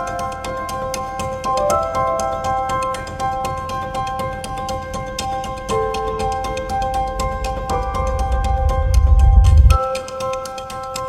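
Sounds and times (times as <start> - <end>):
held synth chords: 0.0 - 11.0
light ticking percussion: 0.0 - 11.0
low bass: 7.7 - 9.8.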